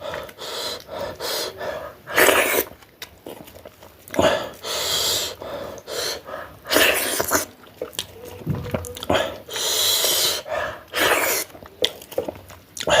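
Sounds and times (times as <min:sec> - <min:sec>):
person panting and hissing air: 0:00.0 - 0:02.7, 0:04.2 - 0:07.5, 0:09.1 - 0:11.5.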